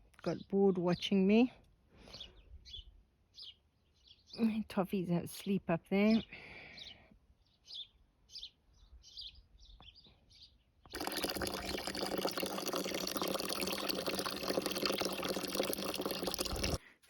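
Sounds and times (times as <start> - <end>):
rushing water: 11.0 - 16.8.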